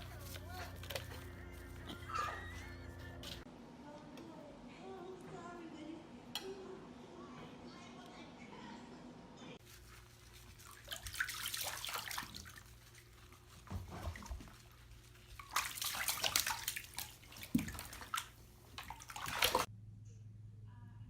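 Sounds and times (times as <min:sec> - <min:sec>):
water splashing: 0:09.6 - 0:19.7.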